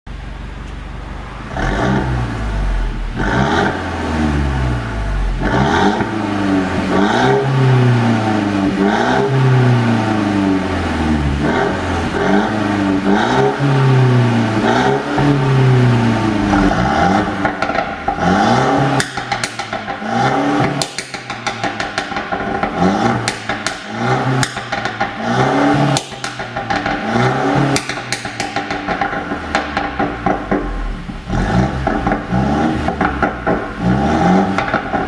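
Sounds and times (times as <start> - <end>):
exhaust popping and crackling: 0.5 - 35.0
car engine revving: 1.0 - 35.0.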